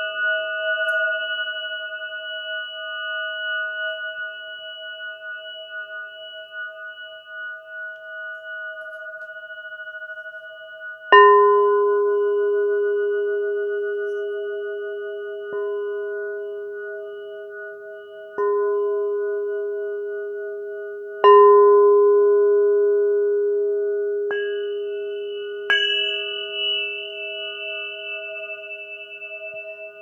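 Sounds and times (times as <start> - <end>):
crystal singing bowl ringing: 0.0 - 30.0
low bowl note struck: 11.1 - 30.0.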